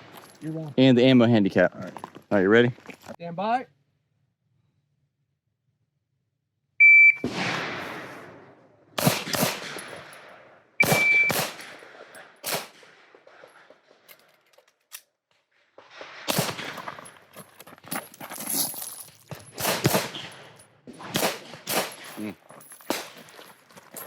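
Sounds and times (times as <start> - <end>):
shot timer beeps: 6.8 - 7.2, 10.8 - 11.4
handgun shots: 9.0 - 10.1, 10.8 - 11.8, 19.6 - 22.3, 22.9 - 23.3.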